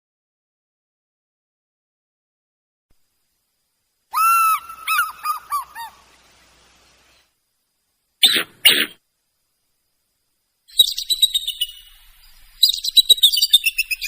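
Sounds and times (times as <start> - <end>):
rapid high bird chirps: 4.1 - 7.4, 8.2 - 9.0, 10.7 - 14.0
short harsh bursts: 8.2 - 9.0.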